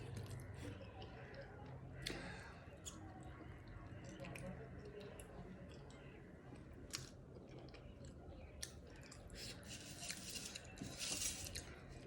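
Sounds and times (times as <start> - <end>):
person chewing food: 6.5 - 12.0.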